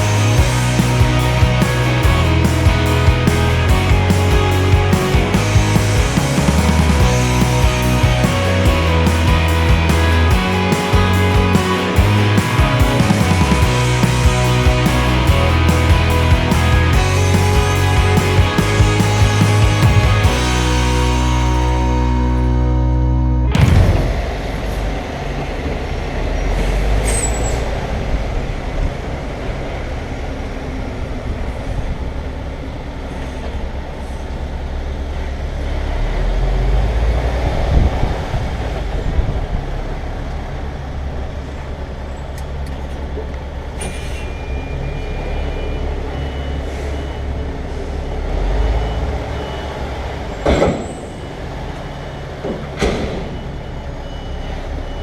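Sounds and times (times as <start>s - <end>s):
lorry diesel engine running: 0.0s - 25.4s
reversing beeps: 43.8s - 55.0s.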